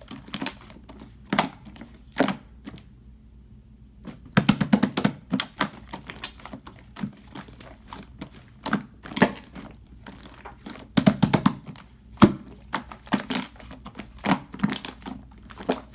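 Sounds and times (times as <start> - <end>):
slime squished by hand: 4.0 - 15.9.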